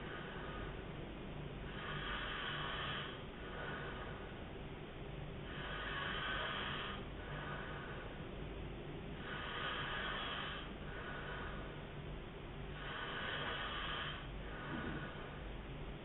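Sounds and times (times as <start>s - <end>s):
man snoring: 1.7s - 4.2s, 5.4s - 8.2s, 9.2s - 11.7s, 12.7s - 15.4s.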